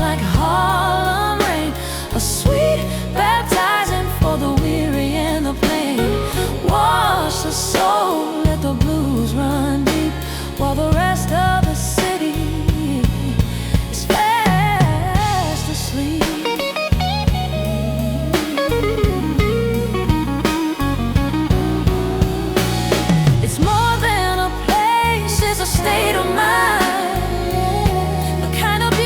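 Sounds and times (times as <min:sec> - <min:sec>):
drum kit beat: 0:00.0 - 0:10.3, 0:10.9 - 0:29.0
bass: 0:00.0 - 0:29.0
sliding lead melody: 0:16.4 - 0:25.1.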